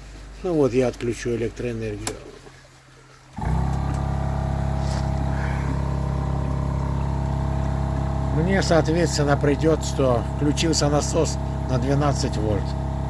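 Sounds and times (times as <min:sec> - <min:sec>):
air compressor humming: 0:03.3 - 0:13.0.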